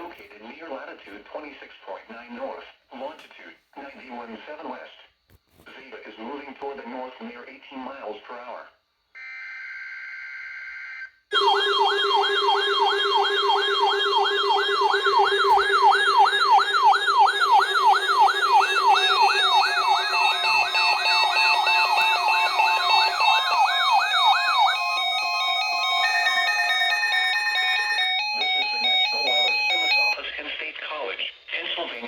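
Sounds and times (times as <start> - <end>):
electronic siren tone: 9.2 - 30.2
stepped beeping tones: 11.3 - 30.2.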